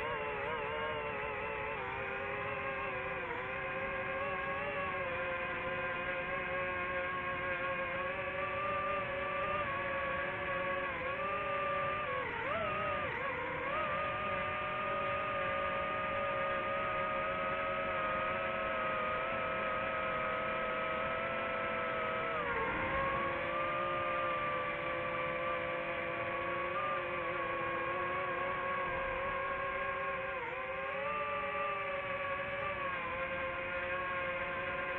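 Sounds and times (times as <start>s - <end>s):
drone propellers whining: 0.0s - 34.9s.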